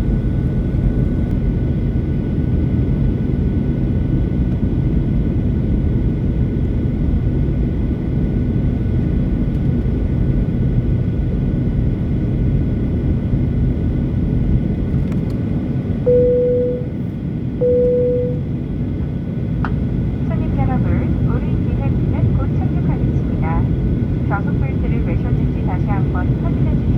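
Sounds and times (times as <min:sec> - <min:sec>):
airliner cabin rumble: 0:00.0 - 0:26.9
faint steady whines: 0:07.8 - 0:26.9
cabin chime two-tone: 0:16.1 - 0:16.9, 0:17.6 - 0:18.4.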